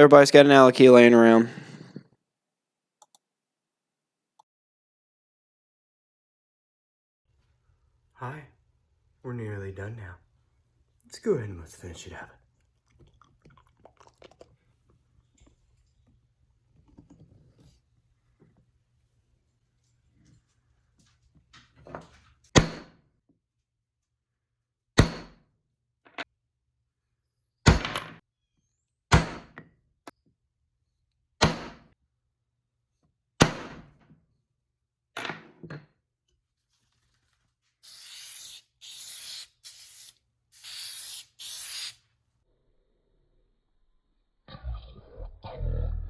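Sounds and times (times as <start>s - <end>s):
aerosol spray can hissing: 37.8s - 42.0s.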